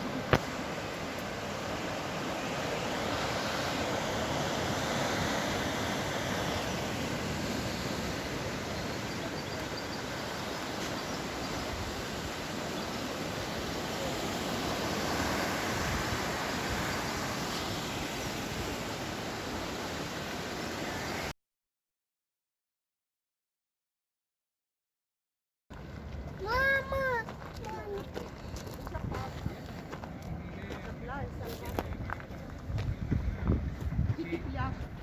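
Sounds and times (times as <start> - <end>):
ocean surf breaking on shore: 0.0 - 21.3.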